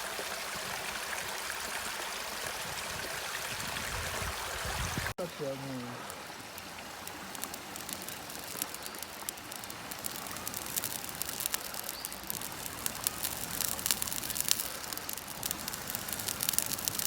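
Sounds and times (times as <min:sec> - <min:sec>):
fire hiss: 0:04.8 - 0:17.0
campfire crackling: 0:05.0 - 0:17.0
fire popping: 0:06.0 - 0:17.0.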